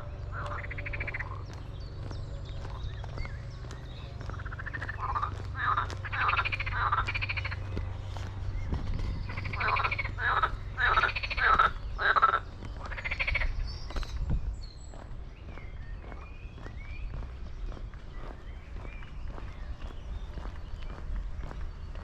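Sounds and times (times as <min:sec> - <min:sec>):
frogs croaking: 0:00.0 - 0:14.1.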